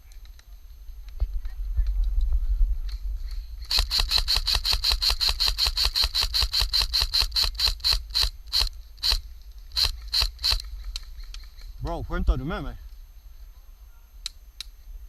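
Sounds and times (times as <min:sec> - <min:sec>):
airsoft gun shots: 0:03.6 - 0:09.2, 0:09.8 - 0:10.7.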